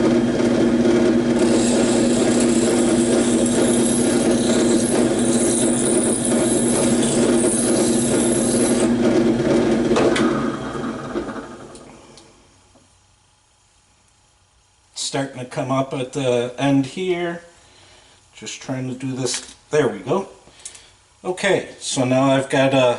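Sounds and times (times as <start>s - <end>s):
motor winding down: 0.0s - 11.9s
power tool grinding plastic: 0.1s - 10.3s.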